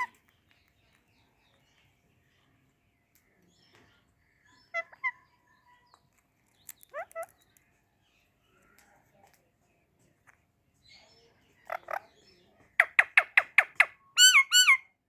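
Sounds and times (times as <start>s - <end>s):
soft parakeet chatter: 0.0s - 15.0s
parakeet chirps: 4.4s - 7.5s, 12.8s - 14.8s
parakeet squawks rising: 14.2s - 14.8s.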